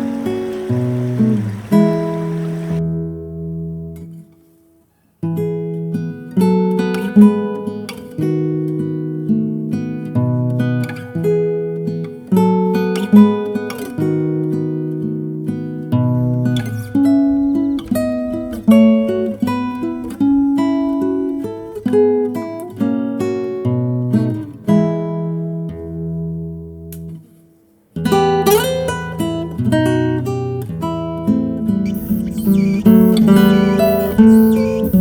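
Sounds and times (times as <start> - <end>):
acoustic guitar music: 0.0 - 4.7, 31.7 - 35.0.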